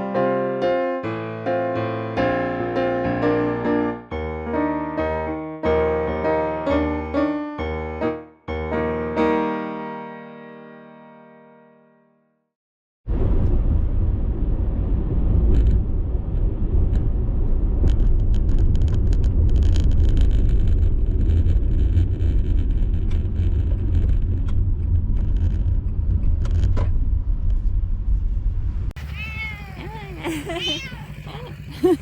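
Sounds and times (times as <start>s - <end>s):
car engine and road rumble: 14.7s - 32.0s.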